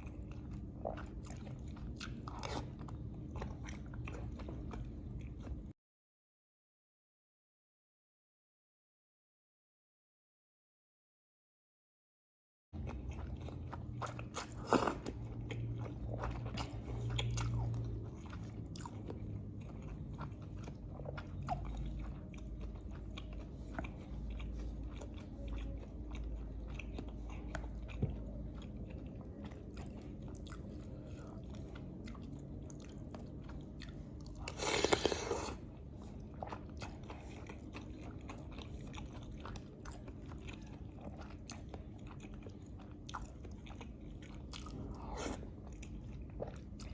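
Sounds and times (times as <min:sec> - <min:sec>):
person chewing food: 0:00.0 - 0:05.8, 0:12.8 - 0:46.9.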